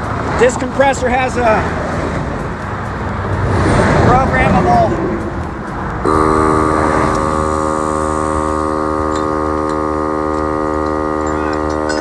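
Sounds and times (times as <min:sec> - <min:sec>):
air compressor humming: 0:06.0 - 0:12.0.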